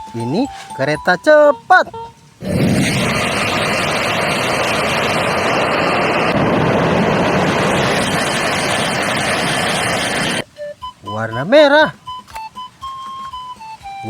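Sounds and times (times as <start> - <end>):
loud steady rushing noise: 2.4 - 10.4.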